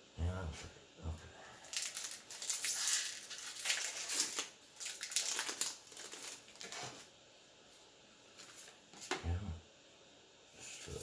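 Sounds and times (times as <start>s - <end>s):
foil wrapper crinkling: 1.6s - 7.1s.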